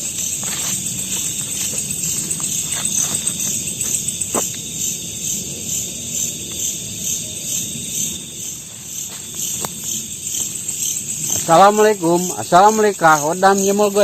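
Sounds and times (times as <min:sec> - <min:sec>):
crickets and insects trilling: 0:00.0 - 0:14.0.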